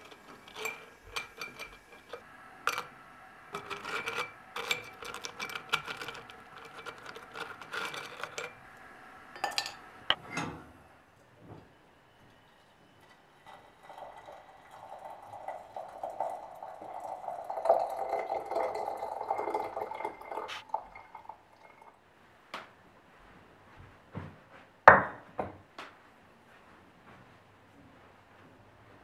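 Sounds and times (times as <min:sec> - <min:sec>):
dishes knocking and clinking: 0:00.0 - 0:02.9, 0:03.6 - 0:08.6, 0:09.4 - 0:10.6, 0:24.9 - 0:25.6
liquid pouring: 0:13.0 - 0:22.0.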